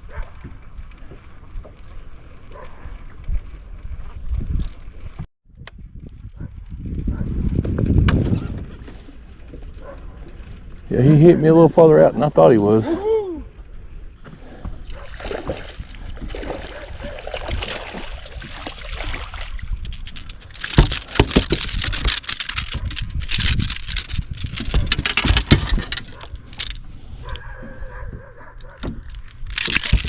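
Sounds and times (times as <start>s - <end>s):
wind: 0.0s - 30.0s
sharp knocks and rattles: 19.8s - 26.8s, 28.6s - 30.0s.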